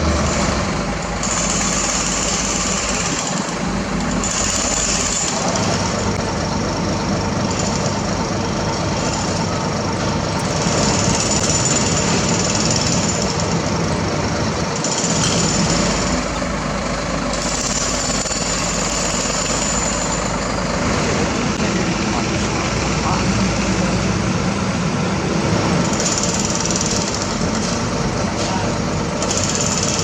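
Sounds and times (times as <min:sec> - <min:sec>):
heavy machinery rattling noise: 0:00.0 - 0:30.0.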